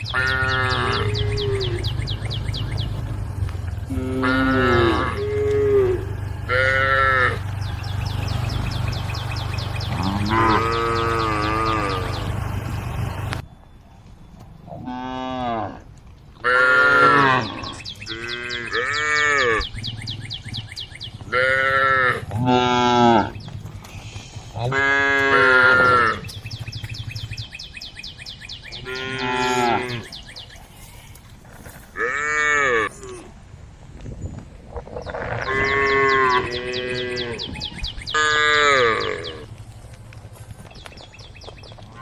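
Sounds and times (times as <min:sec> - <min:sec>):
cows mooing: 0:00.0 - 0:13.4, 0:14.8 - 0:15.8, 0:16.4 - 0:19.7, 0:21.2 - 0:23.4, 0:24.5 - 0:26.3, 0:28.8 - 0:30.2, 0:32.0 - 0:33.3, 0:35.0 - 0:39.5.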